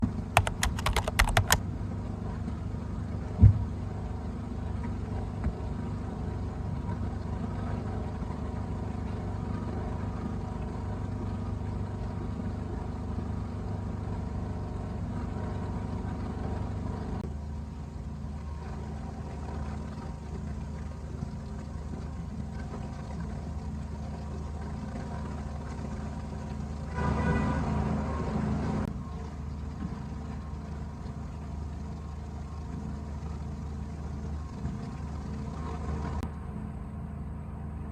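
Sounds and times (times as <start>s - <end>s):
clicks: 0.4s - 1.6s.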